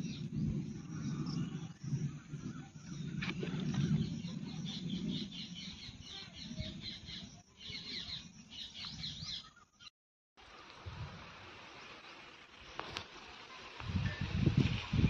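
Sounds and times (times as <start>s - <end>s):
birds chirping: 0.0s - 9.9s.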